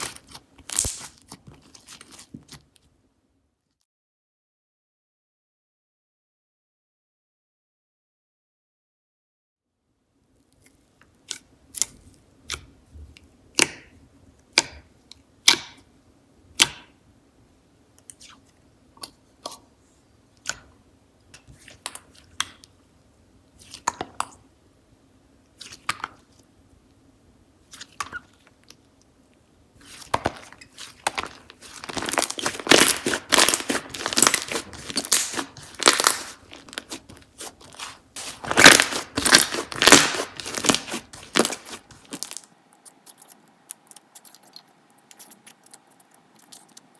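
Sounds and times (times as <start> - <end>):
slime popping and crackling: 0.0 - 1.3, 29.8 - 46.9.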